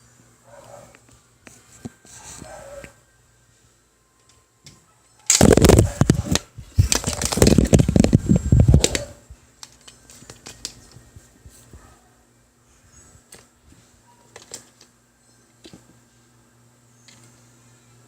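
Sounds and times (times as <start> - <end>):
microphone handling clatter: 5.3 - 9.1.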